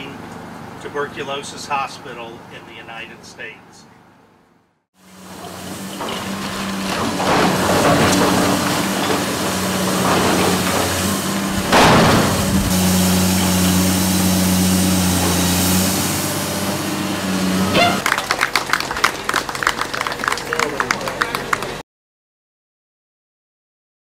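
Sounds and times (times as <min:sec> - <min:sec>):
demolition machine engine running: 0:05.0 - 0:21.8
crashes of breaking material: 0:05.8 - 0:13.5.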